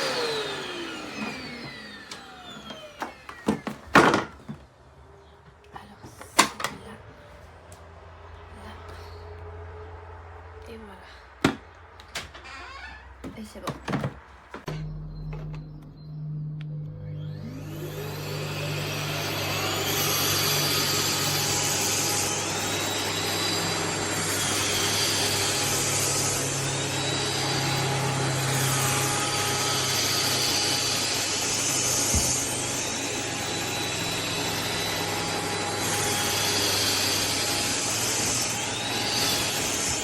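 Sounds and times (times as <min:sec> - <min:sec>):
vacuum cleaner running: 0:00.0 - 0:04.4, 0:15.6 - 0:40.0.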